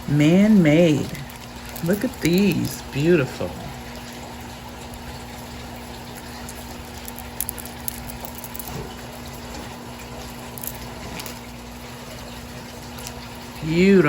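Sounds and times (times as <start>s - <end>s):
background hum and hiss: 0.0s - 14.0s
glass beads clicking: 6.9s - 8.8s, 10.6s - 11.3s.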